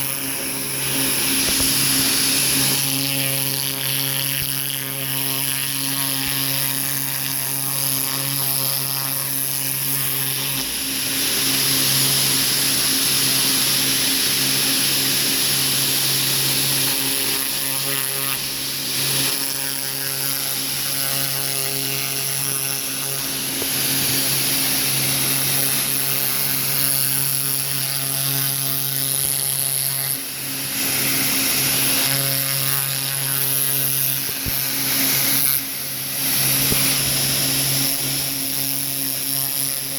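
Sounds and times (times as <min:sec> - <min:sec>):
pressure washer machine hum: 0:00.0 - 0:39.9
water spray hiss: 0:00.1 - 0:03.4, 0:09.5 - 0:17.7, 0:33.4 - 0:39.9.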